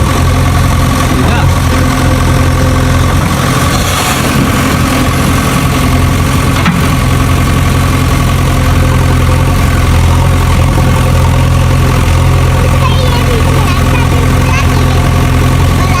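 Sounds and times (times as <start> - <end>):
small engine idling: 0.0 - 16.0.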